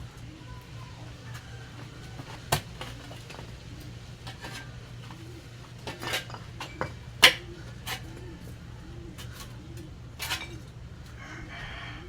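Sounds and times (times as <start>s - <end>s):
hand tools clinking and scraping: 4.2s - 9.6s, 10.2s - 10.8s.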